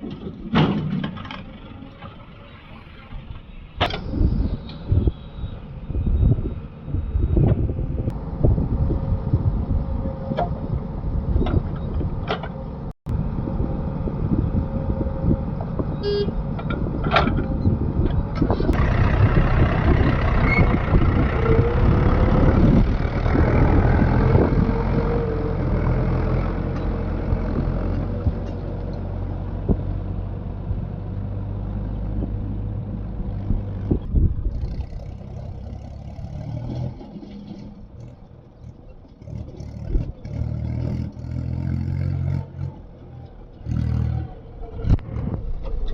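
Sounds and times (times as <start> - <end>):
metal clanks and clatter: 0.0 - 2.2
diesel engines running: 0.0 - 45.9.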